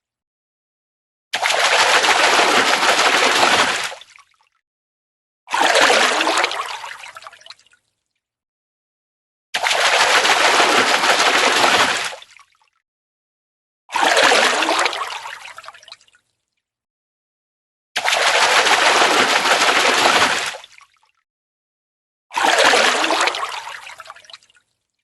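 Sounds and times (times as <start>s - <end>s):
fish splashing in water: 1.4s - 4.4s, 9.6s - 12.6s, 18.0s - 21.2s, 22.4s - 24.3s.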